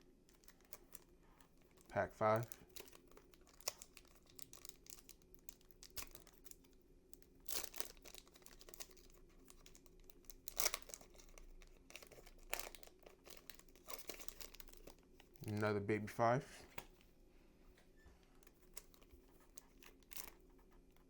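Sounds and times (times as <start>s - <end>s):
plastic wrapper crinkling and tearing: 0.2s - 15.7s, 18.4s - 21.0s.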